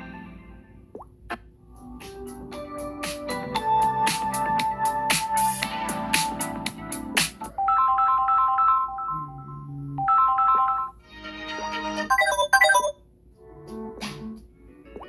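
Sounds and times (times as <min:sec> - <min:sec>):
electronic ringtone beeping tune: 0:12.1 - 0:13.0.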